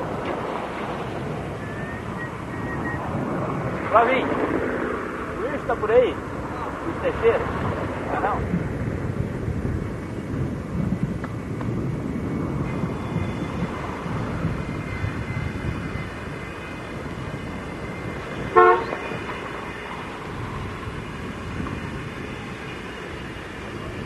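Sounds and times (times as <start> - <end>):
low rumble of traffic: 0.0 - 24.0
vehicle horn toot: 18.5 - 19.2.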